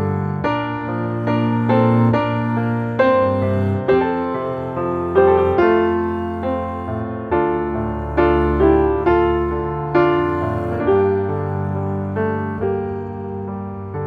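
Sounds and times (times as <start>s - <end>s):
piano music: 0.0s - 14.0s.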